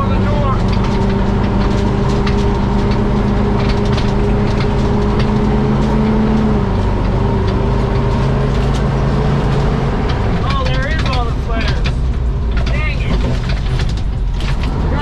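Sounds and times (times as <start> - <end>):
truck engine running: 0.0 - 15.0
sharp cracks and knocks: 0.6 - 14.8.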